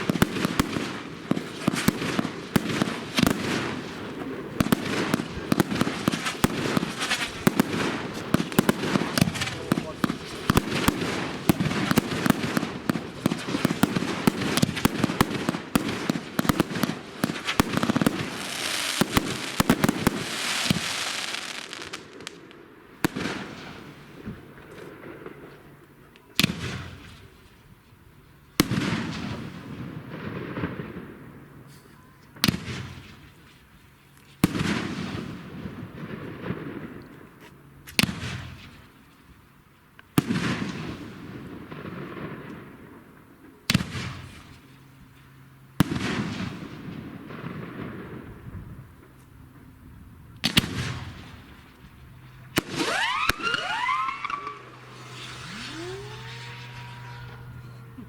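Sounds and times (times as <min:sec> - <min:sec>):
firework crackle: 0:00.0 - 0:25.6, 0:40.1 - 0:45.2, 0:45.8 - 0:58.0
firework bangs: 0:00.0 - 0:25.7, 0:28.6 - 0:31.6, 0:32.4 - 0:33.7, 0:34.4 - 0:37.0, 0:40.2 - 0:44.7, 0:45.8 - 0:58.0
firework whistles: 0:04.6 - 0:22.4, 0:52.5 - 0:58.0.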